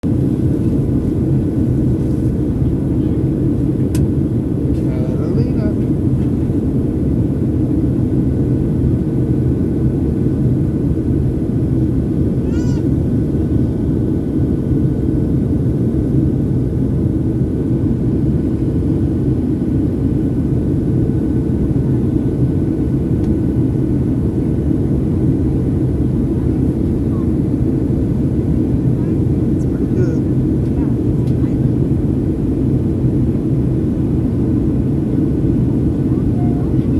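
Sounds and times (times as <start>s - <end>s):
airliner cabin roar: 0.0s - 36.9s
faint high voice-like call: 12.4s - 12.9s, 36.1s - 36.9s.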